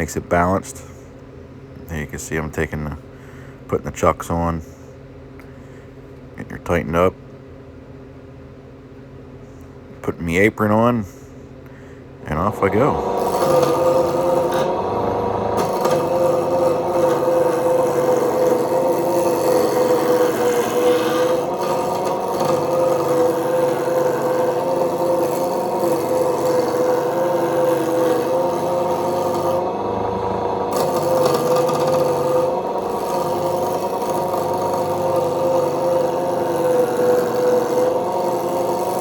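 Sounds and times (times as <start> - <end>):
lathe motor hum: 12.2 - 39.0
gouge scraping spinning wood: 12.3 - 39.0.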